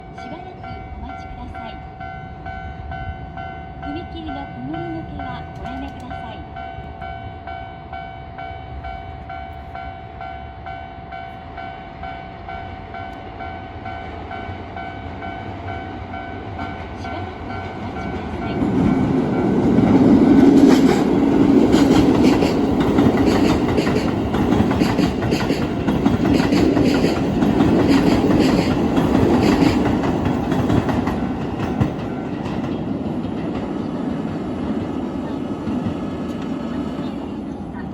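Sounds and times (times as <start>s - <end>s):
electric train rushing past: 0.0s - 37.9s
train wheels clacking on rail joints: 17.6s - 37.0s.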